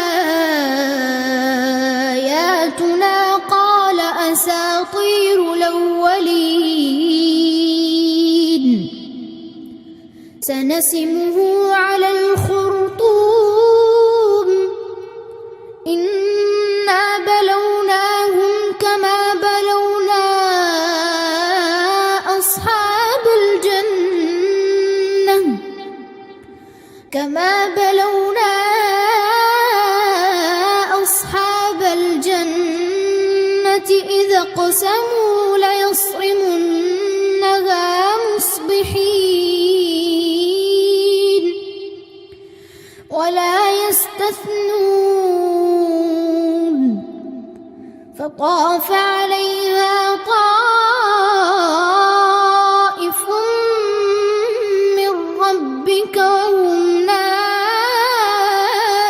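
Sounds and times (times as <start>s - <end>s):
child reciting melodically: 0.0s - 8.9s, 10.4s - 14.9s, 15.9s - 26.2s, 27.1s - 41.7s, 43.1s - 47.1s, 48.2s - 59.0s.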